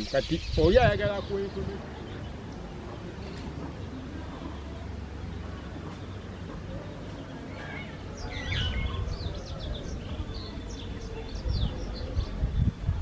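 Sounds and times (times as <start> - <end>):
weaver birds chattering: 0.0 - 13.0.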